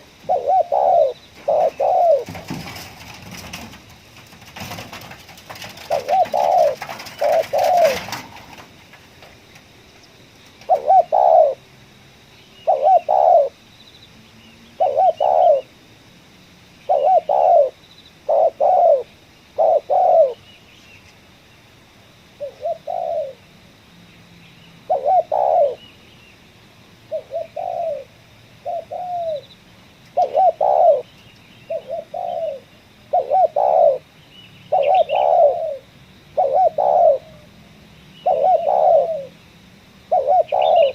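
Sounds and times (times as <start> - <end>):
dove cooing: 0.0 - 9.5, 10.5 - 11.7, 12.6 - 13.6, 14.7 - 15.8, 16.8 - 20.4, 22.4 - 23.5, 24.8 - 25.9, 27.1 - 29.5, 30.1 - 31.1, 31.7 - 40.9
rustling noise: 1.4 - 10.7.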